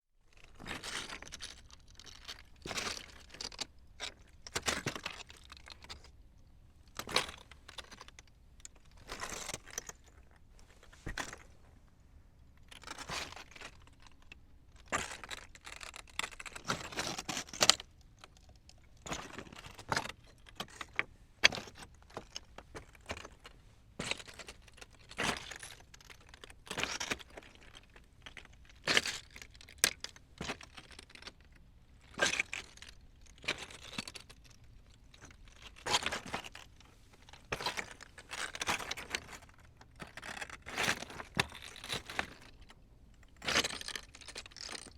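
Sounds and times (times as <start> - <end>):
footsteps on loose rocks: 8.9 - 11.6, 19.0 - 27.8, 35.1 - 42.6.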